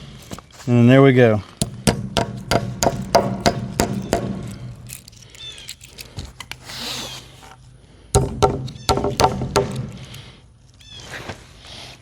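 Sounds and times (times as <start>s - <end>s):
rapid hammer blows on wood: 1.6s - 4.8s, 8.2s - 10.1s.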